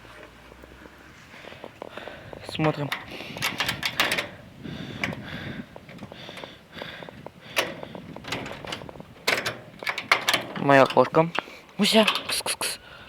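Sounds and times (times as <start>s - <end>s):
door scraping and rattling: 1.6s - 12.6s
door latch clicks: 2.6s - 4.4s, 7.5s - 12.4s.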